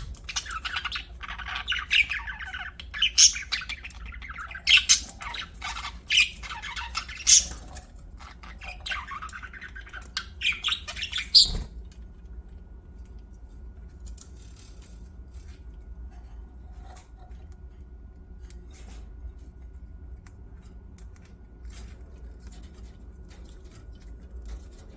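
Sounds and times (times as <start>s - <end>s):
budgerigars chirping and squawking: 0.0s - 11.8s
low steady hum: 0.0s - 24.9s.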